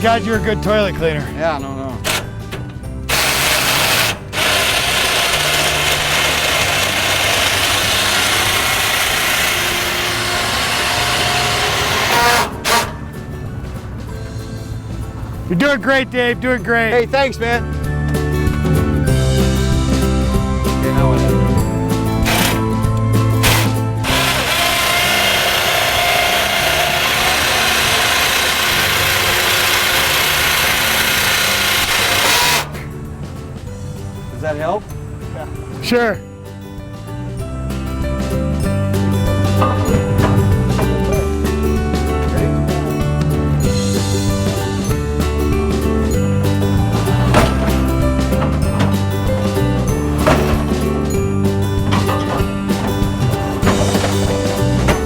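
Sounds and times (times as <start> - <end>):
loud mechanical rushing noise: 2.0 - 15.5, 21.6 - 34.3, 38.2 - 55.0
motor running with hiss: 3.0 - 13.2, 22.2 - 33.0.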